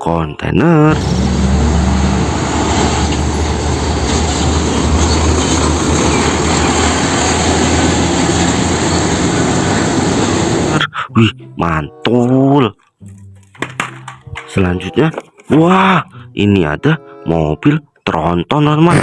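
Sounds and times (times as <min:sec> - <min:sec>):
dense noisy rumble: 0:00.9 - 0:10.8
heavy vehicle engine drone: 0:00.9 - 0:11.0.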